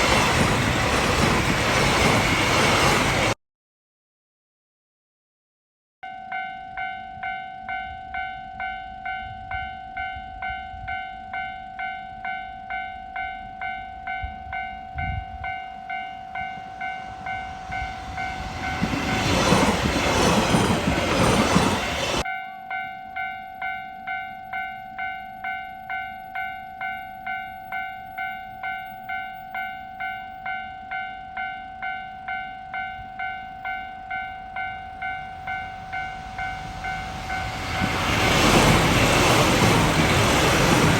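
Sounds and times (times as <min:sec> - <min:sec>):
passing train rush: 0:00.0 - 0:03.4, 0:06.3 - 0:22.4, 0:27.6 - 0:40.9
level crossing warning bell: 0:06.0 - 0:40.9.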